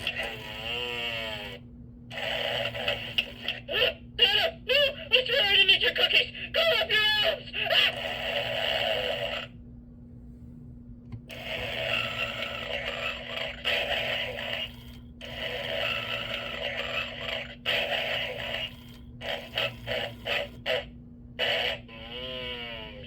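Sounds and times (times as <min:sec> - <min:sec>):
recorded snoring through small speaker: 0:00.0 - 0:03.7, 0:07.8 - 0:09.6, 0:11.3 - 0:23.0
steady low hum: 0:00.0 - 0:23.0.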